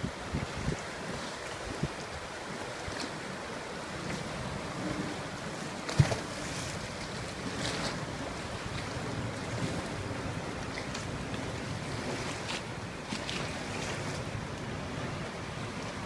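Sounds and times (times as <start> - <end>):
wind buffeting microphone: 0.0 - 2.4
river water roaring: 0.0 - 16.0.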